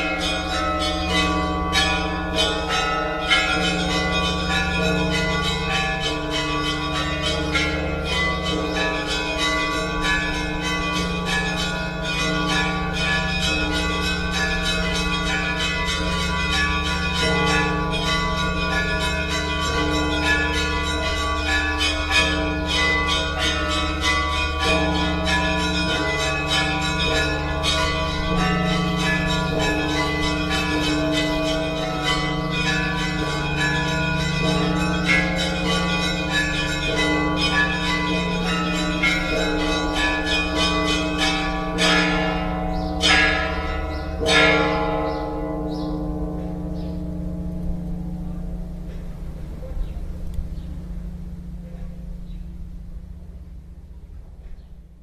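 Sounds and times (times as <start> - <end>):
church bells pealing: 0.0 - 54.8.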